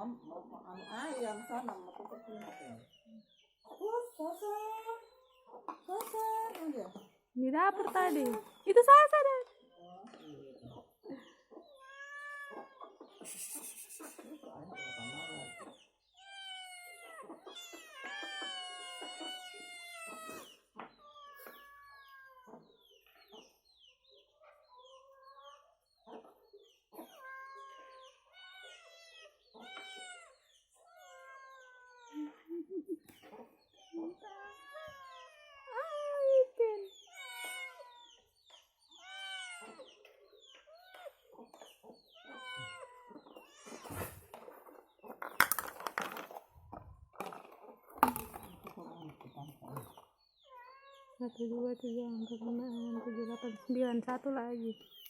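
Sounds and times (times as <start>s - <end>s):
cats meowing: 0.6s - 3.2s, 11.6s - 23.1s, 24.2s - 51.2s, 52.4s - 54.1s.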